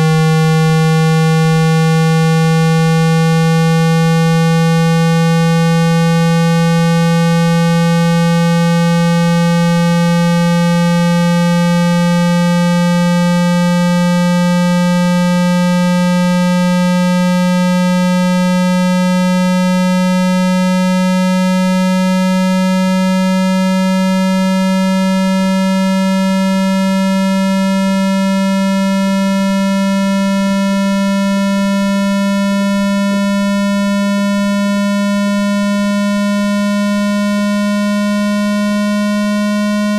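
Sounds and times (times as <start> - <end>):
low buzzy rising tone: 0.0 - 15.8.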